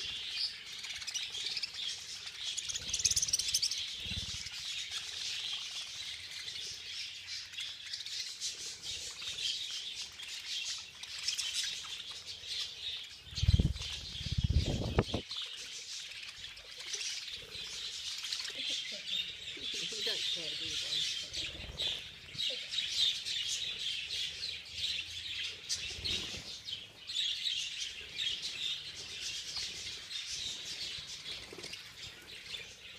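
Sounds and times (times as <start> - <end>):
budgerigars chattering: 0.0 - 32.9
low fluttering thumps: 13.3 - 15.2.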